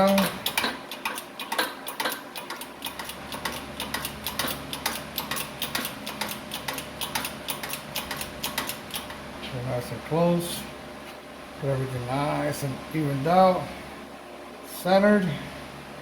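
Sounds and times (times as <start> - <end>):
ratchet wrench clicking: 0.1 - 9.1.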